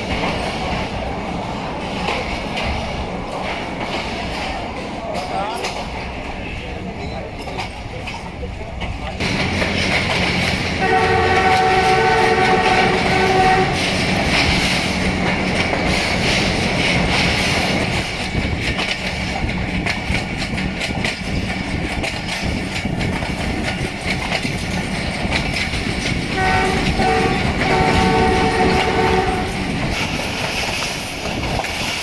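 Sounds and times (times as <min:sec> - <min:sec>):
train rumbling: 0:00.0 - 0:32.0
wheels clicking over rail joints: 0:00.0 - 0:32.0
locomotive air horn blasts: 0:10.8 - 0:14.0, 0:26.4 - 0:29.7.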